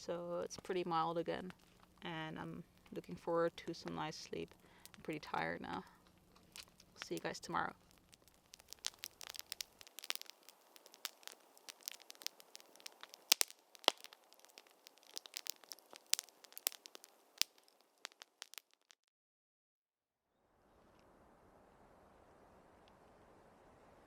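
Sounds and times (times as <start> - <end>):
quiet rustling: 0.0 - 18.6
camping gear crinkling and crackling: 0.0 - 19.0.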